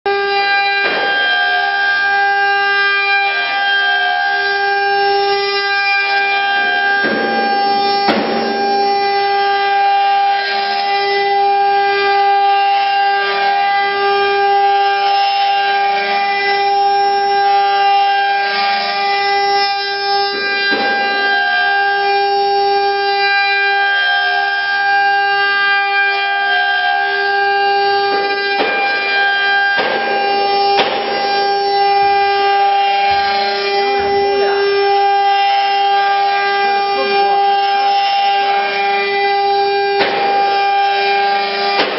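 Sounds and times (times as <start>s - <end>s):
cutting noise: 0.0s - 41.9s
router spindles whining: 0.1s - 41.9s.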